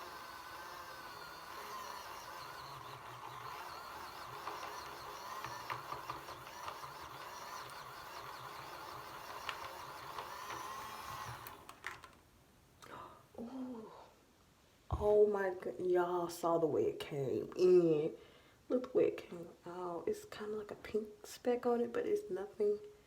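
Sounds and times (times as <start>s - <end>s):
small electric motor whining: 0.0s - 12.1s.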